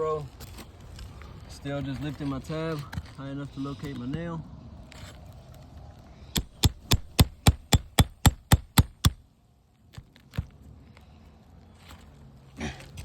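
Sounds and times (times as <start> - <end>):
hammer tapping on shingle: 6.4 - 9.2.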